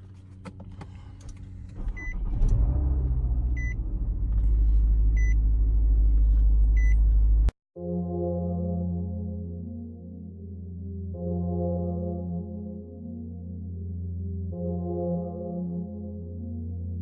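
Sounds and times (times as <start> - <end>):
car engine starting and running: 0.0 - 7.6.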